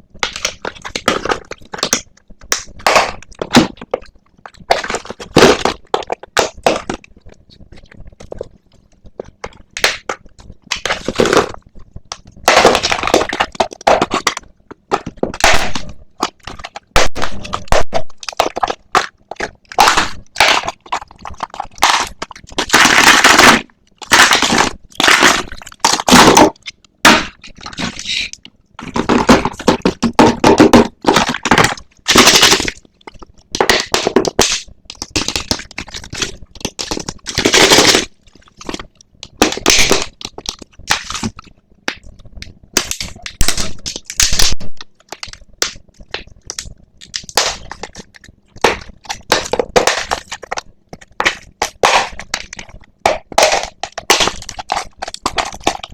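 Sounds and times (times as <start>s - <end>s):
packaging crinkling and tearing: 12.4s - 55.9s.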